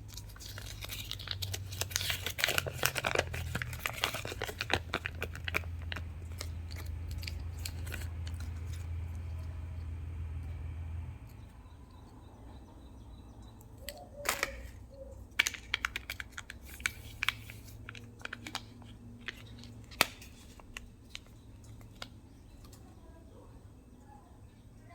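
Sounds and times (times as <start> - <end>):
packaging clicks and crinkles: 0.0 - 9.5, 13.8 - 22.2
low hum: 4.6 - 13.8.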